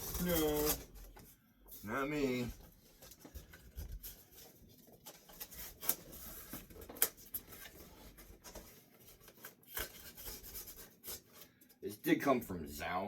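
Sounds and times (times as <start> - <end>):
scratching on cardboard: 0.0 - 1.0.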